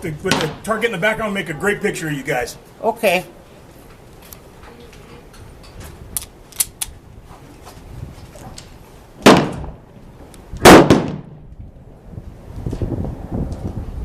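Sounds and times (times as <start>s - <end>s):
pistol shots with echo: 9.3s - 9.8s, 10.7s - 11.4s.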